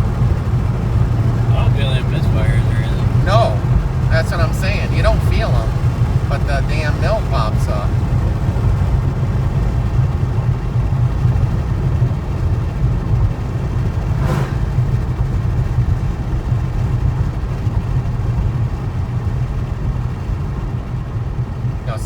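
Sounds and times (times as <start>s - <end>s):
car engine and road drone: 0.0s - 22.0s
brief sharp sound: 14.1s - 15.0s.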